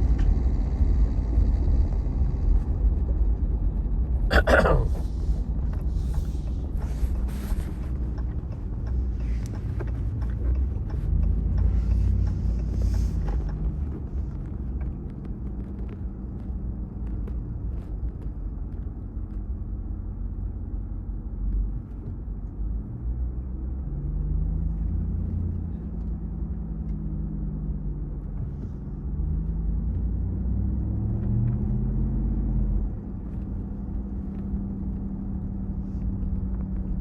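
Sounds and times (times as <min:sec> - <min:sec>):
truck engine rumbling: 0:00.0 - 0:23.0.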